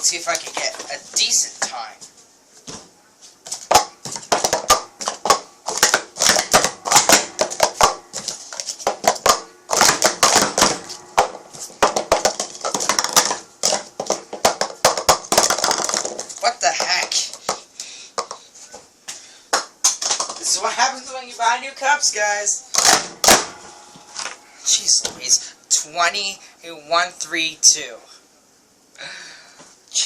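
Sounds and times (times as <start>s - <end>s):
plastic cups clacking: 3.6s - 18.5s, 19.5s - 20.4s.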